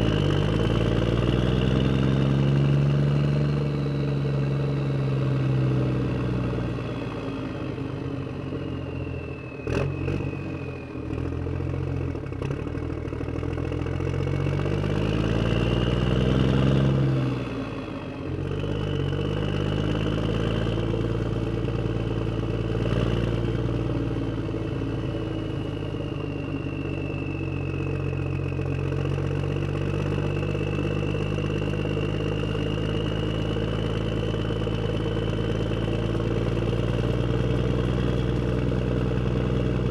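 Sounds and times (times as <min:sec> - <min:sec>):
vehicle engine running and revving: 0:00.0 - 0:39.9
faint high whine: 0:19.8 - 0:39.9.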